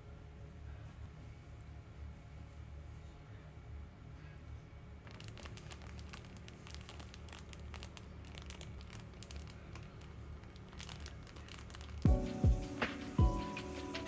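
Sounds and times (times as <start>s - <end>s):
crinkling and rustling: 5.1s - 14.0s
small irregular clicks: 5.1s - 14.0s.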